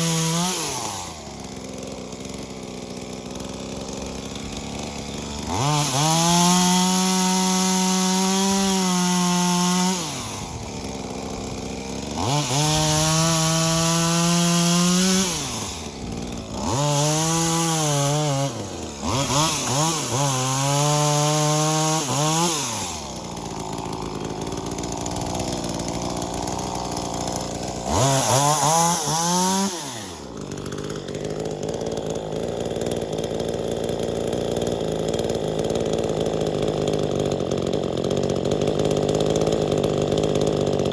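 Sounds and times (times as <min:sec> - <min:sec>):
chainsaw revving and idling: 0:00.0 - 0:40.9.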